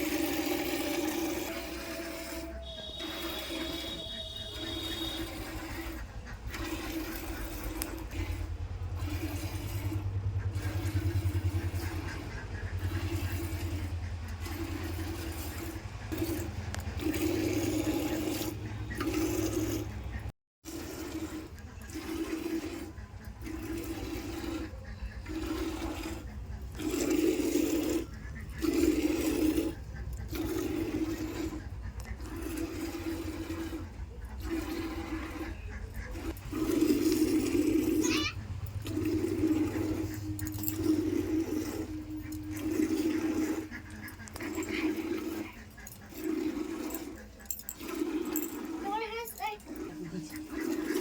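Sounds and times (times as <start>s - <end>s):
milk squirting into a bucket: 20.7s - 51.0s.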